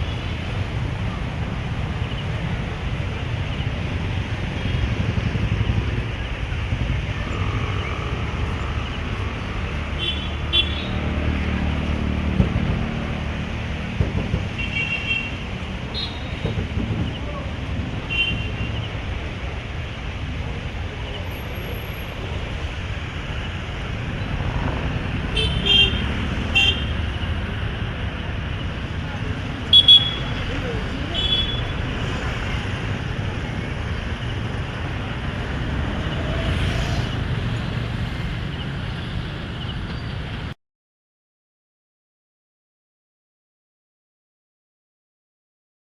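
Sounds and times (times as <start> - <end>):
passing vehicles engine rumble: 0.0 - 40.6
vehicle horn toots: 25.3 - 27.0, 29.7 - 30.5.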